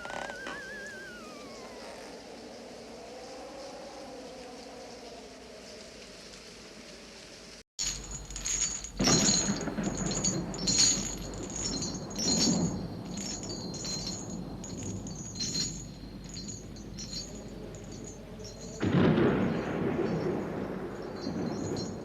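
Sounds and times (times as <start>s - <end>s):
high chimes tinkling: 0.0s - 2.2s, 7.8s - 20.3s, 21.0s - 22.0s.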